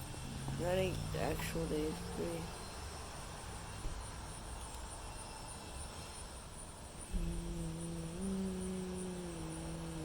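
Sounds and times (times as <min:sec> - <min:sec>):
high-pitched pulsing chirr: 0:07.1 - 0:10.0
man humming: 0:07.1 - 0:10.0.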